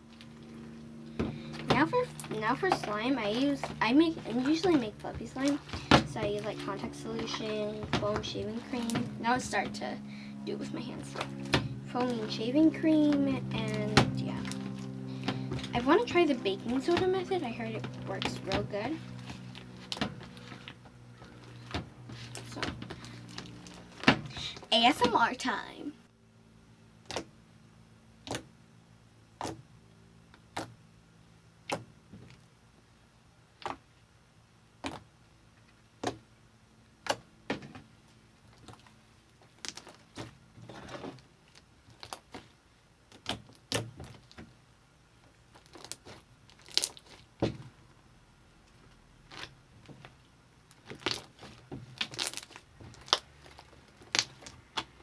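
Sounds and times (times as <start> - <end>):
slime squished by hand: 45.5 - 47.6, 50.7 - 55.0.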